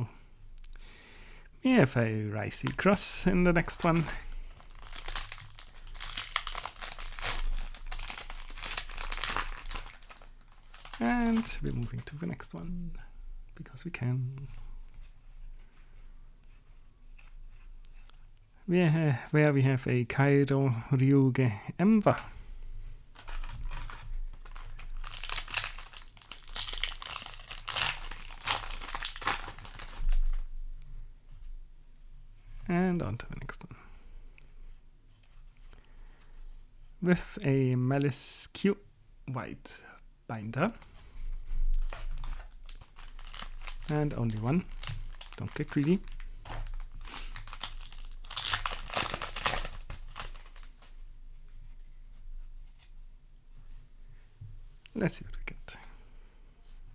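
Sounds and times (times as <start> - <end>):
foil wrapper crinkling: 2.5 - 12.5, 23.1 - 30.4, 40.8 - 50.9
wrapper tearing: 2.6 - 12.5, 23.2 - 30.4, 41.6 - 50.9.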